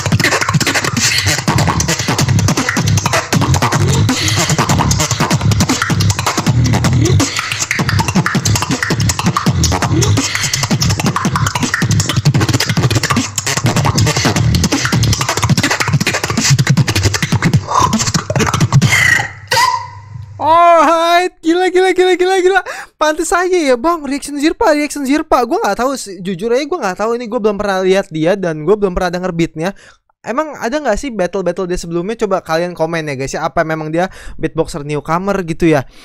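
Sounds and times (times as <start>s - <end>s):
person beatboxing: 0.0s - 19.8s.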